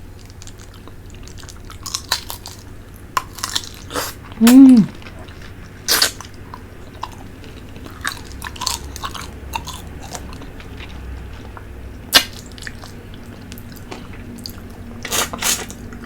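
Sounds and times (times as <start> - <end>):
person slurping and chewing: 3.3 - 6.3, 12.2 - 16.0
lip smacks: 3.9 - 5.0.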